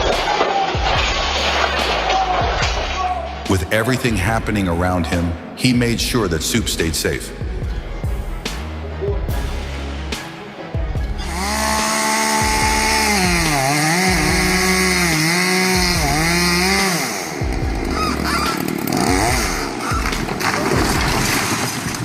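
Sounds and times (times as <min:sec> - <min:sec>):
chainsaw cutting at high revs: 0:11.2 - 0:20.2.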